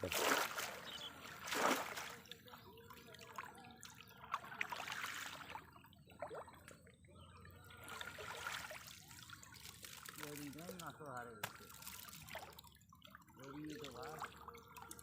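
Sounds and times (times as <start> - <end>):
water splash: 0.0 - 2.4, 4.3 - 6.5, 7.9 - 12.7
water dripping and trickling: 0.0 - 15.0.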